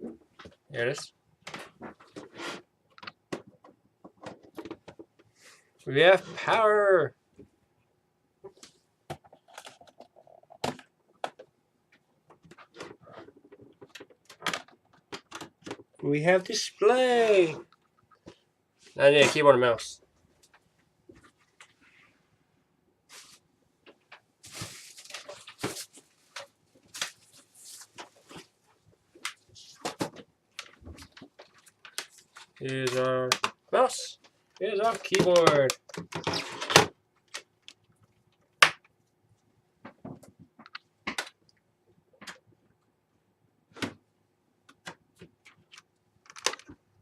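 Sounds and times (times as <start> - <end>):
hands handling computer hardware: 8.5 - 16.0, 23.1 - 39.0, 44.6 - 46.9
keyboard and mouse handled: 12.3 - 16.0, 34.6 - 37.8, 44.7 - 46.8.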